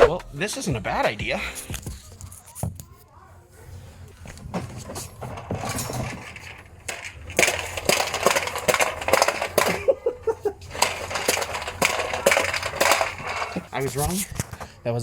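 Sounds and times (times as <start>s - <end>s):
hard objects clattering: 4.0s - 14.8s.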